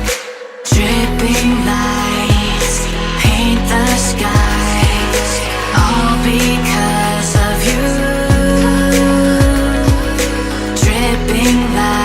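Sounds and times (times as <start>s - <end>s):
electronic pop music: 0.0s - 12.0s
deep kick drums: 0.7s - 1.3s, 2.3s - 6.6s, 7.4s - 8.7s, 9.4s - 11.4s.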